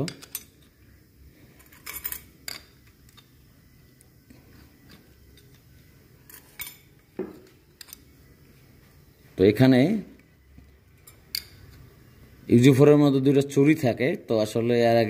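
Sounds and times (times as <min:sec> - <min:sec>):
metal tools clinking: 0:00.0 - 0:00.7, 0:01.6 - 0:03.3, 0:06.3 - 0:08.0, 0:11.0 - 0:11.7.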